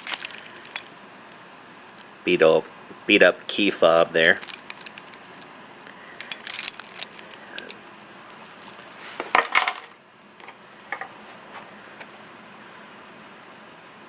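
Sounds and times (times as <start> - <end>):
keys jingling: 0.0 - 1.0, 4.3 - 5.5, 6.1 - 8.9.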